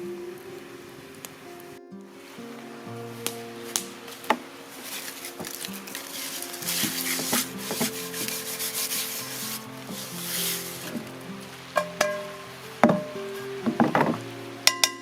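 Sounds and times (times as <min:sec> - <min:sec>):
soft background music: 0:00.0 - 0:15.0
rubbing and scraping on wood: 0:04.8 - 0:11.1.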